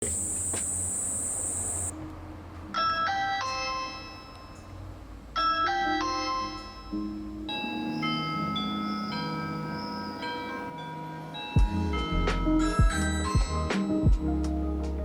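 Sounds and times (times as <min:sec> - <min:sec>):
steady high hiss: 0:00.0 - 0:01.9
low background music: 0:01.6 - 0:15.0
doorbell chime tune: 0:03.2 - 0:04.8, 0:05.4 - 0:14.3.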